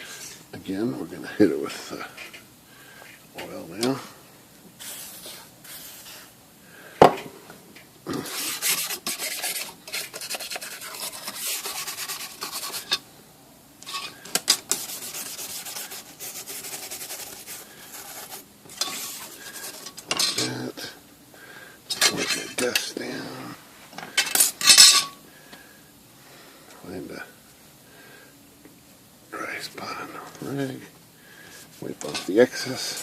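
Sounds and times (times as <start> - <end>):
rag rubbing on metal panel: 4.8 - 6.3, 8.2 - 13.0, 13.8 - 19.9.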